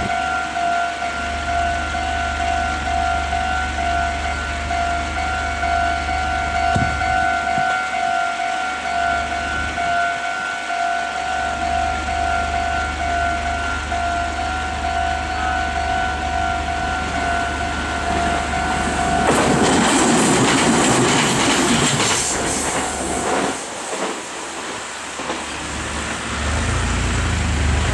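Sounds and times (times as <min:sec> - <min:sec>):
level crossing warning bell: 0:00.0 - 0:20.6
train passing over rails: 0:00.0 - 0:27.9.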